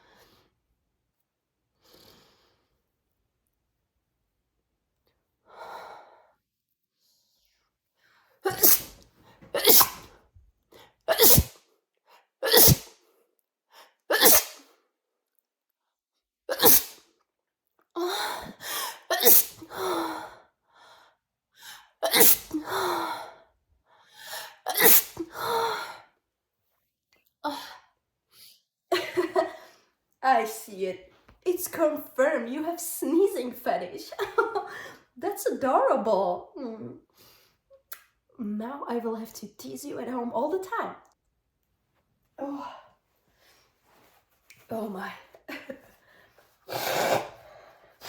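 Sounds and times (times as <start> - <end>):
woman sneezing: 8.5 - 9.0, 9.6 - 10.1, 11.1 - 11.6, 12.4 - 12.9, 14.1 - 14.7, 16.5 - 17.0, 19.1 - 19.7, 22.0 - 22.8, 24.7 - 25.4.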